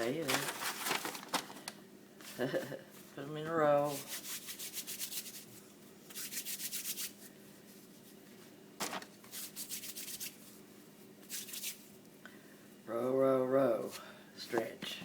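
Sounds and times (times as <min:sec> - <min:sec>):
hands rubbing dough: 0:03.8 - 0:12.0.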